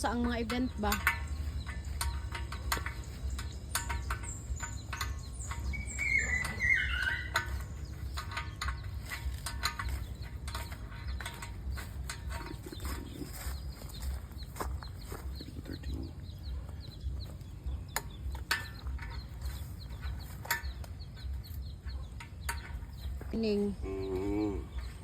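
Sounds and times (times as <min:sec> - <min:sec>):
sharp clicks and taps: 0:00.0 - 0:16.1
birds chirping: 0:00.0 - 0:25.0
low steady rumble: 0:00.0 - 0:25.0.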